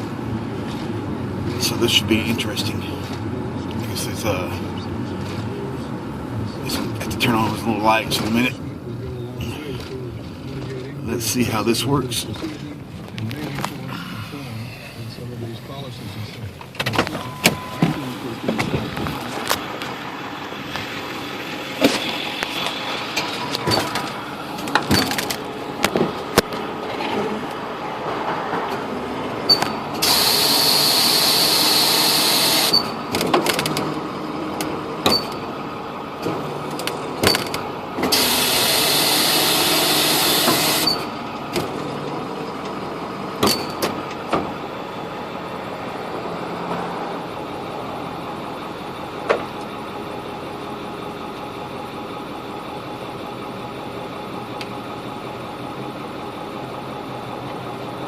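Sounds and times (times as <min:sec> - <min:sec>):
truck engine running: 0:00.0 - 0:58.0
hydraulic hissing whine: 0:17.4 - 0:25.8, 0:29.9 - 0:33.0, 0:38.1 - 0:41.2
metal clanks and clicks: 0:21.8 - 0:27.2.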